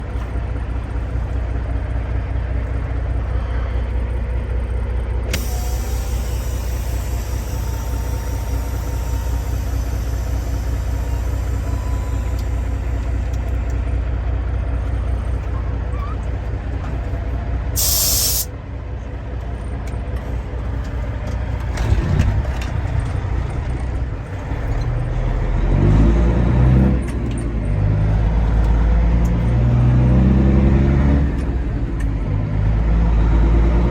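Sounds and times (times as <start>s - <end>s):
diesel truck engine idling: 0.0s - 33.9s
air-brake hiss: 5.3s - 13.3s, 17.8s - 18.5s
truck engine revving: 20.6s - 33.9s.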